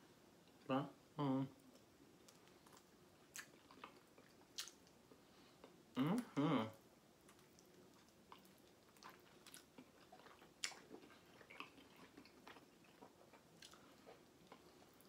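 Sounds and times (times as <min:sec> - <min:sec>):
person chewing: 0:01.7 - 0:05.0, 0:07.3 - 0:15.0.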